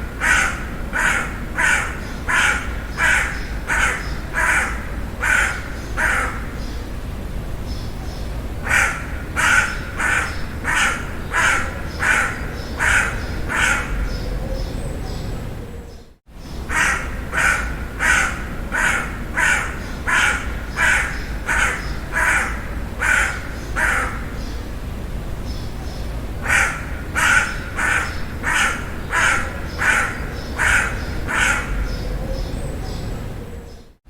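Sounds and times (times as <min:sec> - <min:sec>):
crow cawing: 0:00.0 - 0:06.6, 0:08.6 - 0:14.1, 0:16.7 - 0:24.4, 0:26.4 - 0:32.0.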